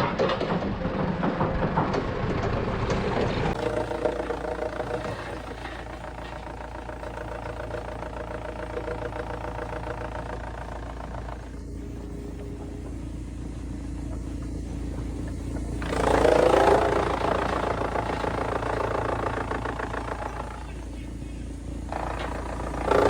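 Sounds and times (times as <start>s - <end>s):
engine running: 0.0s - 23.0s.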